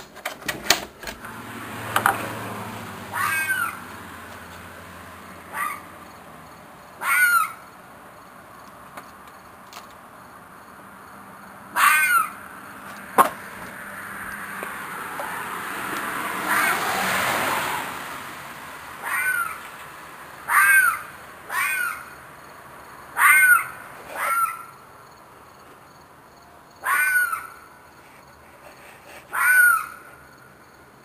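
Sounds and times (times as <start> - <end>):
animal screeching calls: 3.1 - 3.9, 5.5 - 5.9, 7.0 - 7.7, 11.7 - 12.4, 16.4 - 17.1, 19.0 - 19.6, 20.5 - 22.2, 23.2 - 24.7, 26.8 - 27.7, 28.8 - 30.2.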